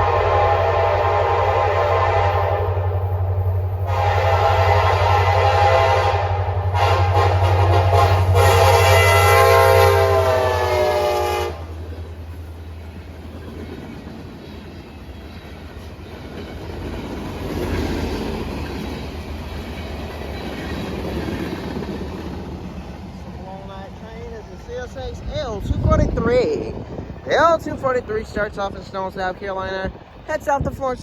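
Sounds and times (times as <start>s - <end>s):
locomotive air horn chord: 0.0s - 3.2s, 3.8s - 11.8s
train wheels clacking on rails: 11.8s - 25.9s.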